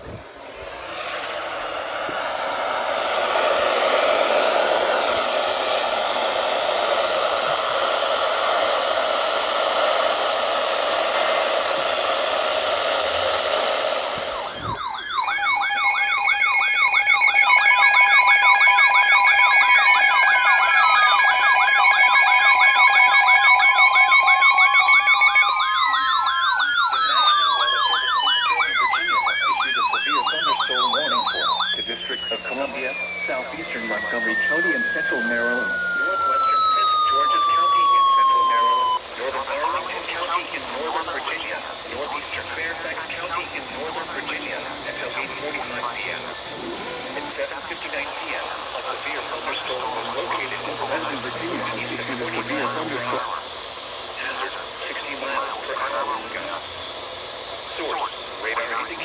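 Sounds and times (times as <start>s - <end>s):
steady beeping tones: 0.0s - 4.7s, 14.4s - 39.0s, 40.6s - 47.4s
yelping siren sweeps: 0.0s - 8.0s, 14.1s - 39.0s, 40.7s - 47.4s, 49.2s - 53.4s
rising and falling wails: 0.0s - 10.2s, 13.6s - 39.0s, 40.7s - 47.4s, 49.4s - 53.4s
dense steady rushing noise: 0.0s - 12.2s.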